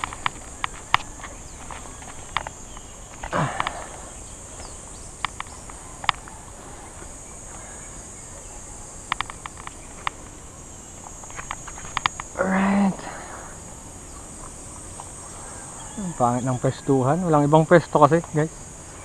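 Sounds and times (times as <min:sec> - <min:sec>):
sharp clicks and snaps: 0:00.0 - 0:03.8, 0:05.2 - 0:06.4, 0:09.0 - 0:10.3, 0:11.0 - 0:12.4
high-pitched insect drone: 0:00.0 - 0:19.0.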